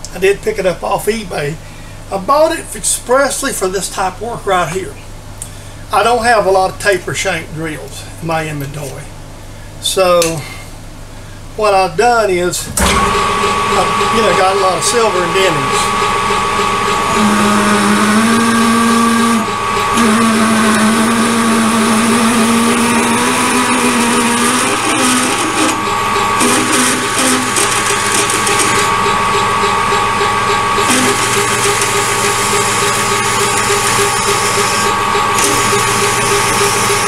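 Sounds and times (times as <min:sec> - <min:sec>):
droning cutting tone: 0:11.6 - 0:37.0
metal lathe humming: 0:12.7 - 0:37.0.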